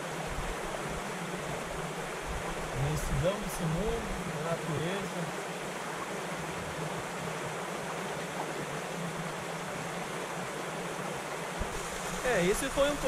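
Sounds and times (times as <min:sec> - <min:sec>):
stream rushing: 0:00.0 - 0:13.0.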